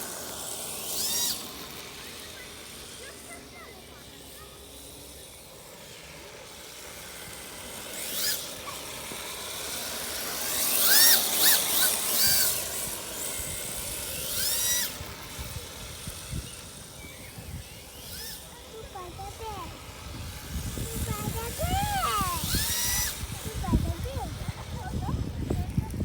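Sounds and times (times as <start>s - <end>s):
electric motor whining: 0.0s - 26.0s.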